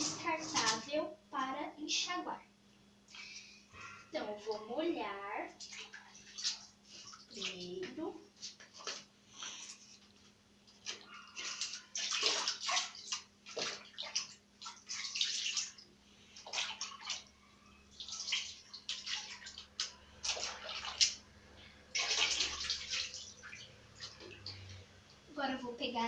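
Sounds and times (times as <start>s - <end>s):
water splashing on fan guard: 0.0s - 0.9s, 10.7s - 17.3s, 18.0s - 21.3s, 21.9s - 24.8s.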